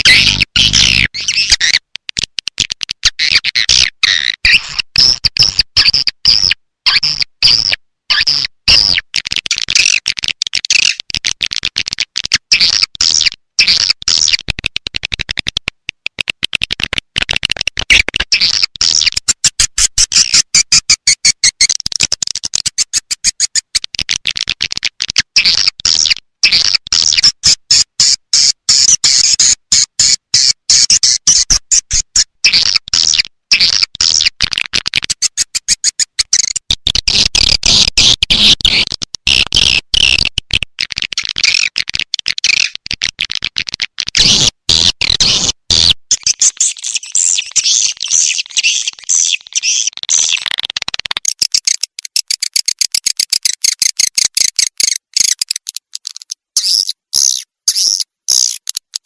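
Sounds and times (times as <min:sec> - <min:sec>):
birds twittering rapidly: 0:46.1 - 0:50.4.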